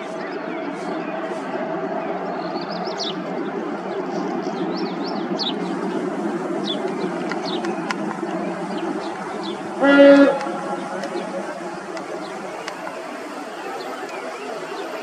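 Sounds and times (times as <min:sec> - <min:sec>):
small birds chirping: 0:00.0 - 0:15.0
steady rumbling noise: 0:00.0 - 0:15.0
sharp clicks: 0:06.8 - 0:08.4, 0:10.4 - 0:13.0.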